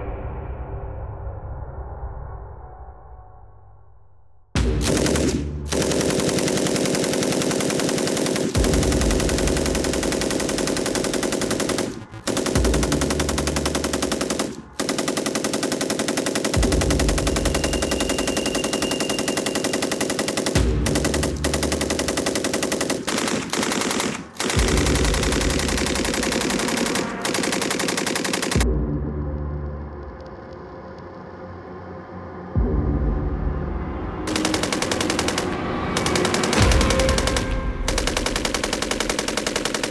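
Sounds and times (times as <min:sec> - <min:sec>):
machine gun automatic fire: 0:04.8 - 0:28.6, 0:34.3 - 0:39.9.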